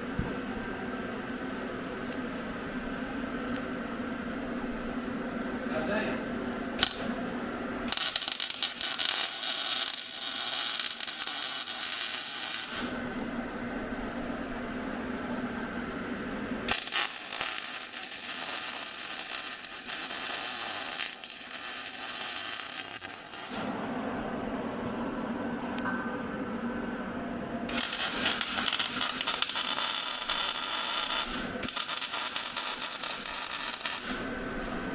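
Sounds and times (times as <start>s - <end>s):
low steady hum: 0.0s - 21.5s, 22.1s - 34.9s
loud hissing crackling noise: 6.8s - 7.2s, 7.8s - 13.0s, 16.6s - 23.8s, 27.7s - 34.9s.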